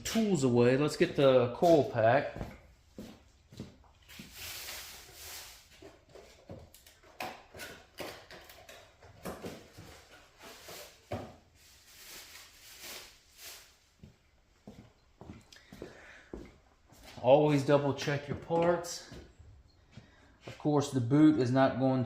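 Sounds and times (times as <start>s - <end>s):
hand tools clicking and knocking: 6.4s - 10.2s.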